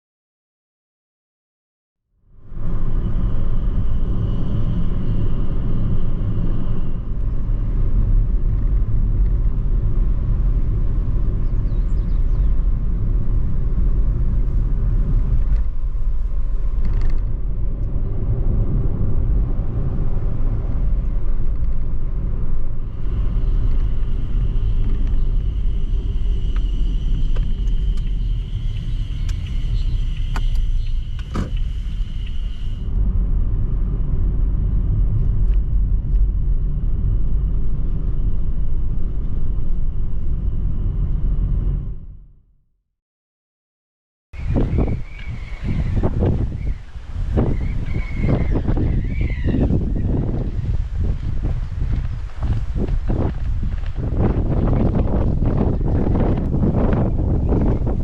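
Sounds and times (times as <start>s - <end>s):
car engine and tyre rumble: 2.3s - 42.3s, 44.4s - 58.0s.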